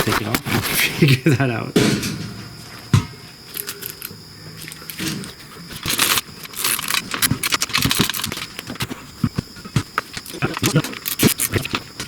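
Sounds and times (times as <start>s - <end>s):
metal parts jangling: 3.5s - 8.8s, 10.1s - 11.8s
metal tools clinking and rattling: 3.5s - 9.0s, 10.0s - 11.8s
sharp clicks: 5.8s - 8.9s, 10.0s - 11.9s.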